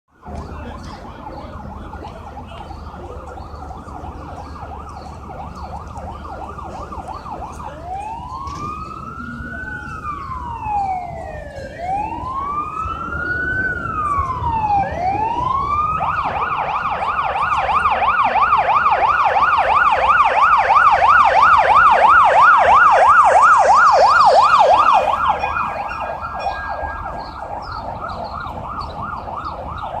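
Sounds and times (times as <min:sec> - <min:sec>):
ambulance siren: 0:00.1 - 0:30.0.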